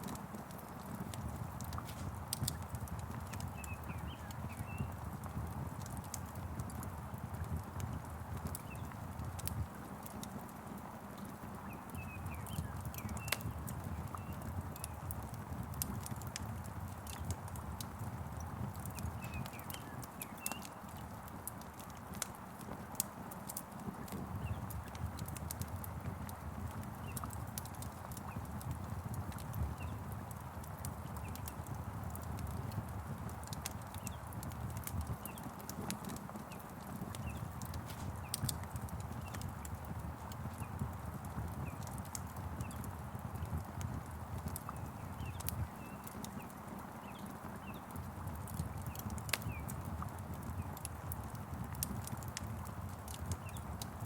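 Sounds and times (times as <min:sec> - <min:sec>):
log fire crackling and popping: 0:00.0 - 0:54.0
faint bird chirps: 0:03.3 - 0:05.0, 0:11.6 - 0:15.1, 0:18.9 - 0:20.9.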